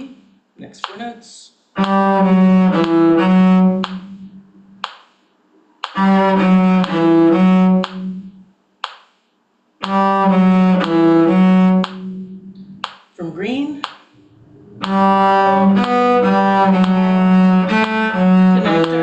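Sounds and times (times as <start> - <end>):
bowed string instrument phrase: 14.2 - 19.0.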